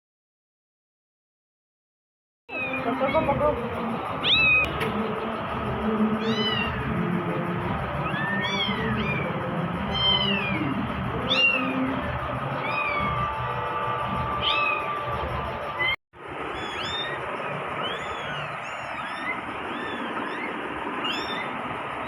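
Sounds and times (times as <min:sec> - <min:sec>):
kittens mewing: 0:02.5 - 0:03.4, 0:04.2 - 0:04.8, 0:06.1 - 0:07.1, 0:07.8 - 0:13.4, 0:14.4 - 0:15.0, 0:15.8 - 0:22.0.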